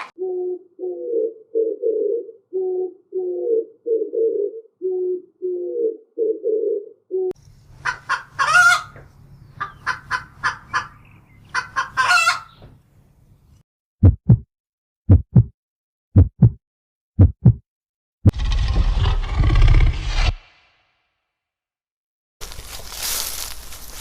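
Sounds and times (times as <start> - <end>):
low cooing call: 0.0 - 7.4
chickens clucking: 7.8 - 12.8
low thumps: 14.0 - 14.5, 15.1 - 15.5, 16.2 - 16.6, 17.2 - 17.6.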